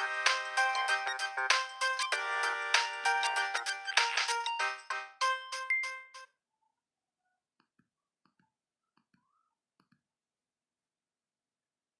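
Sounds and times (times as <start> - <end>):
polyphonic phone ringtone: 0.0 - 6.3.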